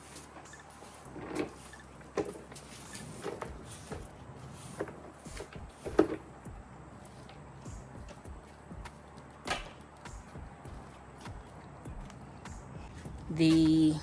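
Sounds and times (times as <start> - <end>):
knocks and rustles: 0.0 - 13.8.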